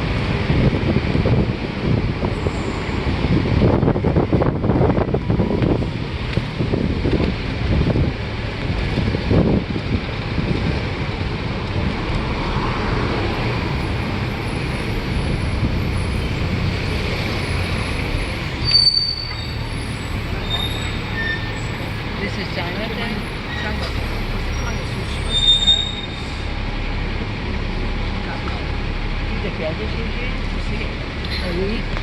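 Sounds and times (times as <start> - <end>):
bus engine and road noise: 0.0 - 32.0
short high-pitched squeal: 18.6 - 21.8, 23.5 - 26.5.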